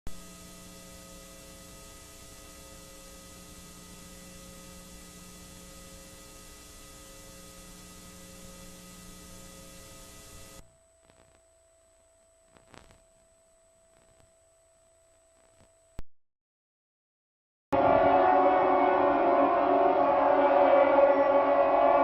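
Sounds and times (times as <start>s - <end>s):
electrical hum: 0.1s - 16.0s
steady tones: 17.8s - 22.0s.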